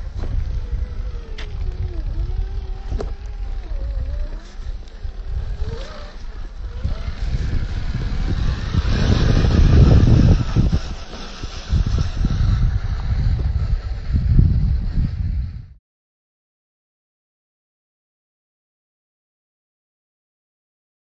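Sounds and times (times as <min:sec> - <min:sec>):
electric motor whine: 0:00.0 - 0:15.8
low rumble: 0:00.0 - 0:15.8.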